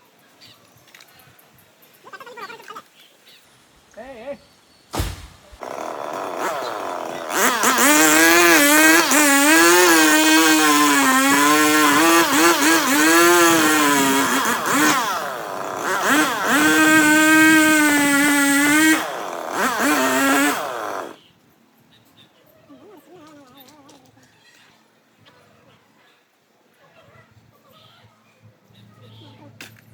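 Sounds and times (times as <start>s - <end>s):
chainsaw revving: 5.0s - 21.2s.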